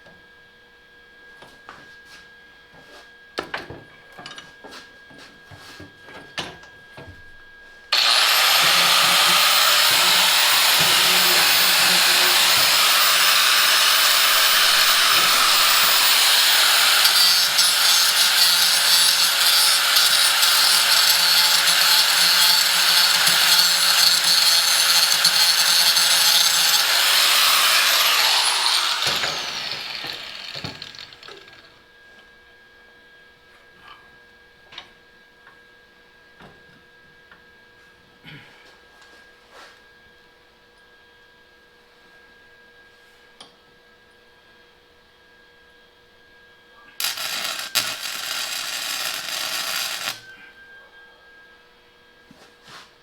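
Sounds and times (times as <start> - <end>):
angle grinder cutting steel: 8.0 - 31.7, 47.0 - 50.4
grinder spinning down whine: 8.0 - 31.7, 47.0 - 51.0.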